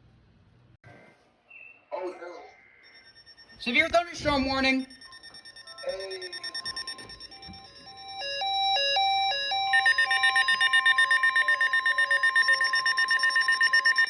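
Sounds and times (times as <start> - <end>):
fast pulsing beep: 2.8 - 14.0
steady alert tone: 2.9 - 14.0
electronic beeps jumping pitches: 3.0 - 14.0.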